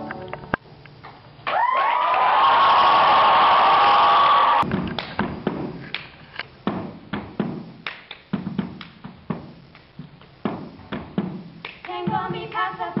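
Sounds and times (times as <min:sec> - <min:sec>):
hand claps taps and thumps: 0:07.1 - 0:09.1, 0:10.9 - 0:12.6.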